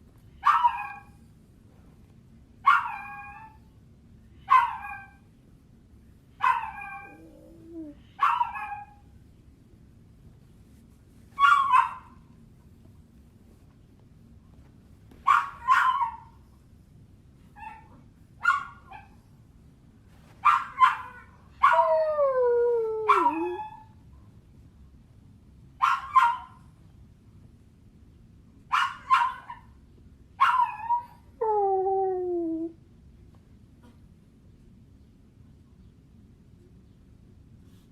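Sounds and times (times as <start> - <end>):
dog whimpering: 6.8 - 8.0, 22.8 - 23.7, 31.4 - 32.8.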